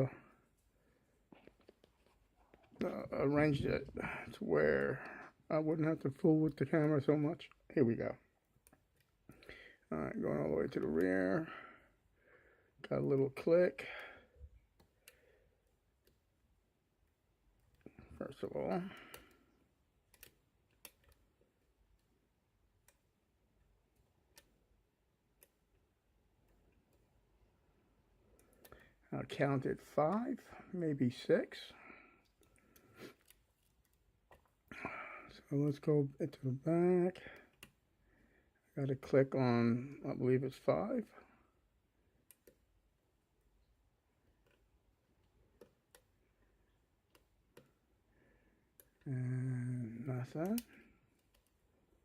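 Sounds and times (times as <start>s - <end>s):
faint metallic ticks of lock picking: 20.1s - 21.2s.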